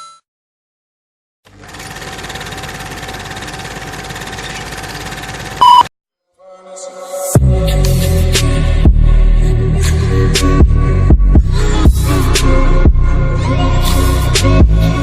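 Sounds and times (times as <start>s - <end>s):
rapid mechanical rattle: 1.5s - 5.6s
loud short beep: 5.6s - 5.9s
music with heavy bass: 7.4s - 15.0s.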